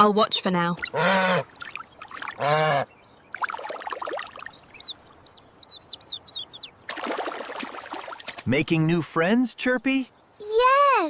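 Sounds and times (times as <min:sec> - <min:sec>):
water splashing and trickling: 0:00.5 - 0:09.0
duck quacking: 0:00.8 - 0:01.5, 0:02.4 - 0:02.9.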